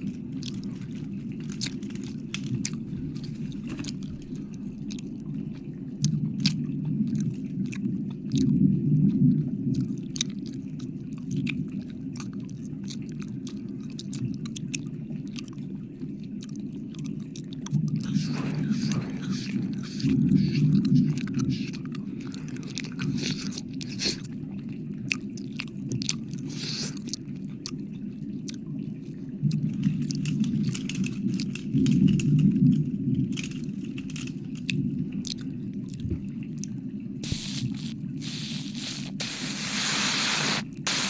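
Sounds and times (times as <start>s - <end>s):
wet mouth licking and smacking: 0.0s - 0.9s, 1.5s - 5.3s, 6.0s - 15.6s, 16.3s - 24.4s, 25.1s - 27.8s, 34.7s - 36.0s, 36.6s - 41.0s
breath blown at microphone: 26.4s - 27.1s, 37.2s - 41.0s.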